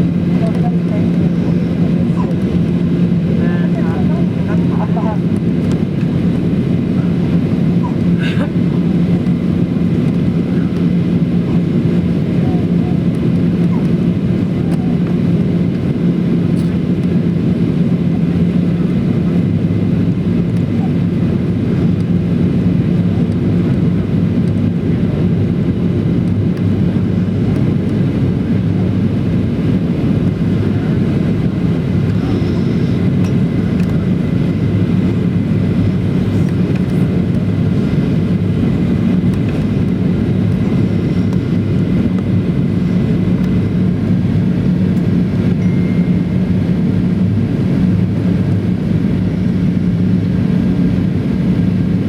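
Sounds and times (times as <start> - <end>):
airplane cabin engine drone: 0.0 - 52.0
faint high tone: 45.6 - 46.4.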